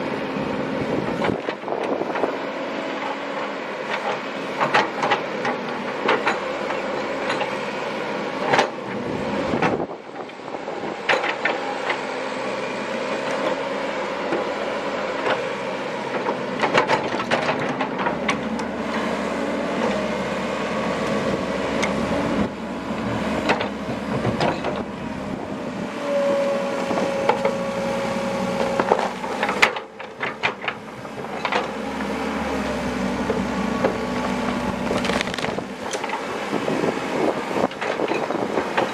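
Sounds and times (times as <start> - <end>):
excavator diesel engine running: 0.0 - 38.9
bucket and rocks clanking: 34.8 - 36.1.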